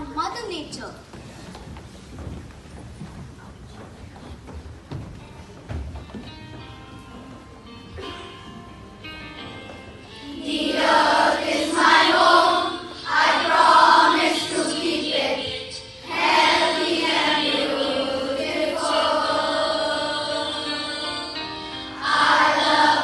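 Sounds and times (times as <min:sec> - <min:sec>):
backing music: 0:02.0 - 0:23.0
children singing in unison: 0:10.3 - 0:23.0.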